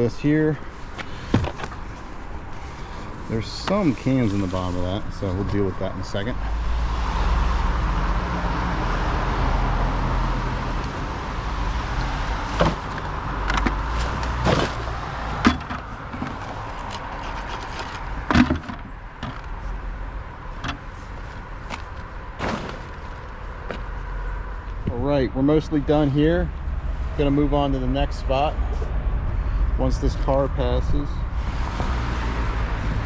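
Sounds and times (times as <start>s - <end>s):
road vehicle passing: 0.0s - 33.0s
plastic trash and cans clattering: 12.4s - 19.6s, 21.8s - 23.3s.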